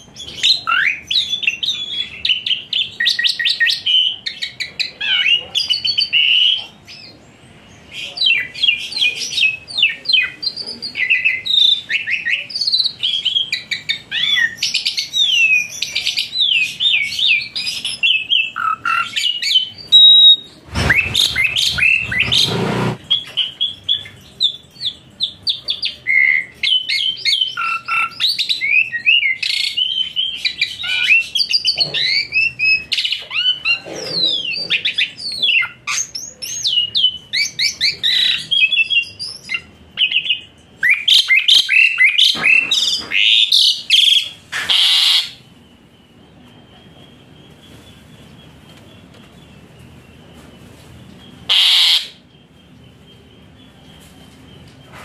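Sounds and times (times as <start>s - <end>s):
songbird singing: 0.0s - 55.0s
loud clattering noise: 20.5s - 23.1s.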